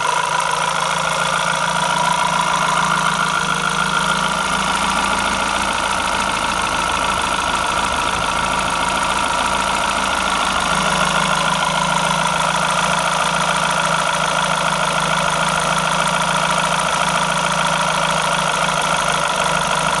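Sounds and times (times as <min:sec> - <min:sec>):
car engine idling: 0:00.0 - 0:20.0
engine whine: 0:00.0 - 0:20.0
low hum: 0:01.8 - 0:12.8.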